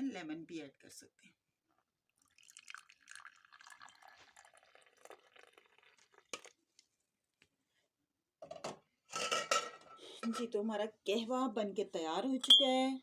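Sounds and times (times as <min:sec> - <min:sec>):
tea pouring into a cup: 0:02.2 - 0:06.9.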